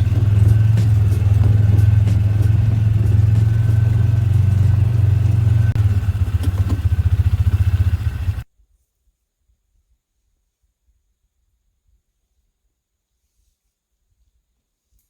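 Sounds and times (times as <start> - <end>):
light rattles: 0.0 - 8.4
vehicle engine and road drone: 0.0 - 8.4.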